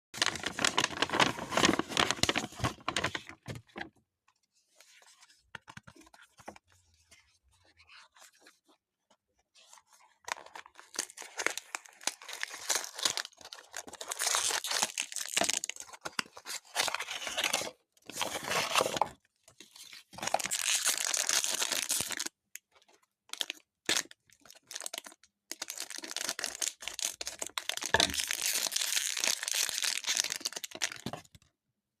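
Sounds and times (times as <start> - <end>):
packaging tearing and crinkling: 10.5 - 15.9, 25.6 - 31.2.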